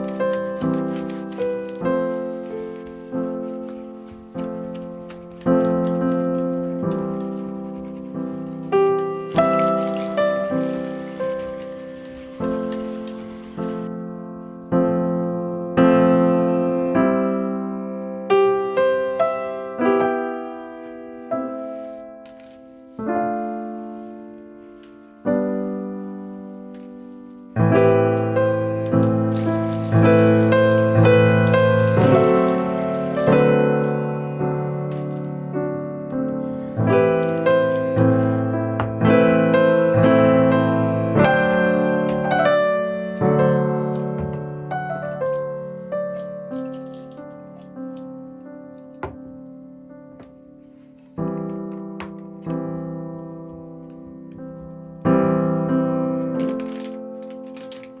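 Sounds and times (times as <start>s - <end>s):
gentle piano piece: 0.0s - 58.0s.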